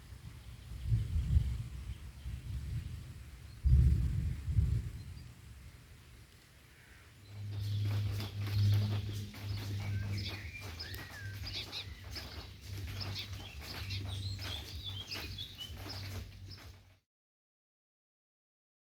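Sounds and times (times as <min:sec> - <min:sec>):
small birds chirping: 0:06.7 - 0:17.0
steady low hum: 0:07.2 - 0:16.9.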